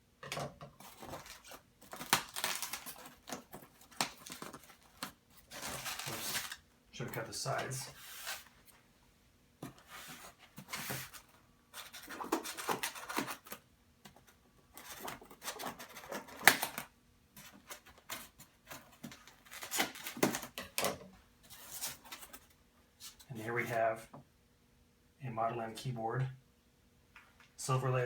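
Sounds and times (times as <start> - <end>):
cardboard scraping and rustling: 0.8 - 8.8, 9.6 - 20.6, 21.4 - 23.8.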